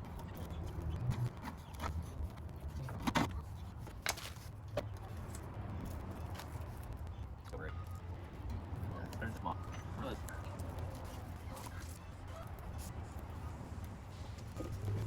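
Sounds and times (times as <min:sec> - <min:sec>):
clicks and knocks of parts handled: 0:02.8 - 0:05.4.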